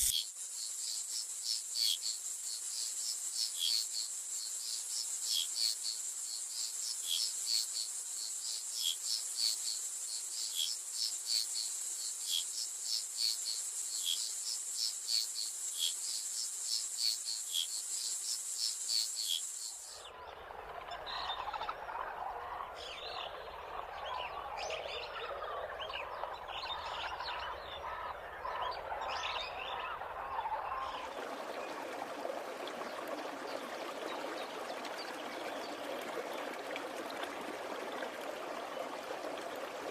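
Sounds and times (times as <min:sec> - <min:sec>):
pulsing insect chorus: 0:00.0 - 0:20.0
running water: 0:30.8 - 0:39.9.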